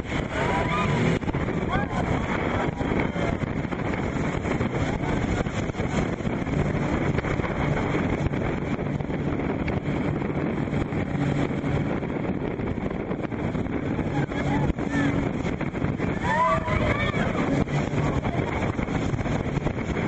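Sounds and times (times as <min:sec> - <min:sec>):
motorboat engine humming: 0:00.0 - 0:20.0
water rushing: 0:00.0 - 0:20.0
wind buffeting microphone: 0:00.0 - 0:20.0.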